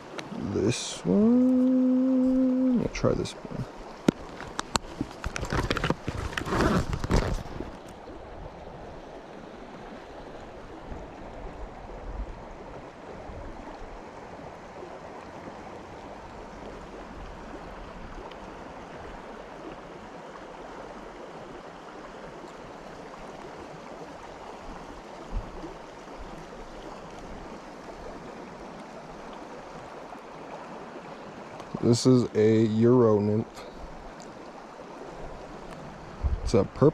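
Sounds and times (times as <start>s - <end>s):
creek running over rocks: 0.0s - 36.9s.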